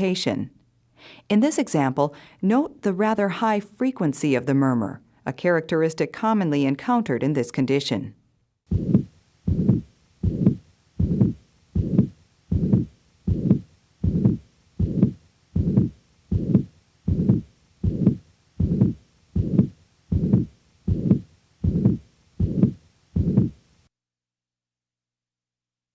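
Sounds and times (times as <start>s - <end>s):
heartbeat through stethoscope: 8.7s - 23.6s
high-pitched heart murmur: 8.7s - 23.6s.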